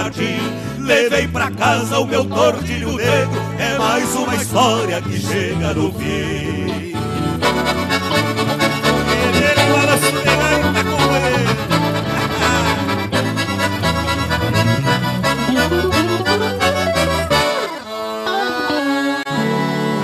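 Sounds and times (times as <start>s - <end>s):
bass line: 0.0s - 17.9s
accordion band playing: 0.0s - 20.0s
regular beat: 7.0s - 18.4s.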